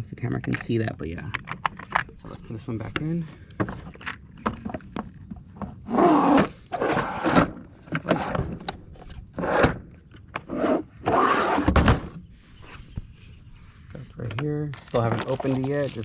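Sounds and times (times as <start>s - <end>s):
plastic tool tray scraping: 14.8s - 16.0s.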